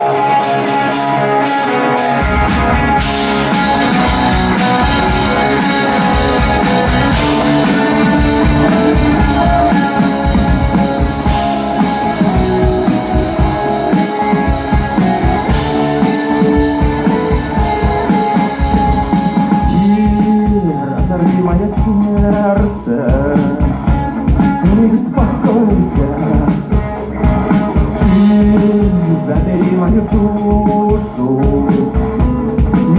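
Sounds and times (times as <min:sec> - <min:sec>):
person singing: 0:00.0 - 0:23.8, 0:24.5 - 0:27.1, 0:28.0 - 0:32.9
electric guitar: 0:00.0 - 0:32.9
steady drum beat: 0:00.0 - 0:32.9.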